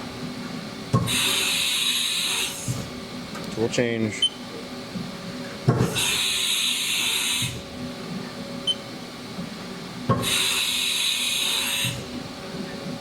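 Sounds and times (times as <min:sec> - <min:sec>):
pneumatic air hiss: 0:01.0 - 0:02.9, 0:05.8 - 0:07.6, 0:10.1 - 0:12.1.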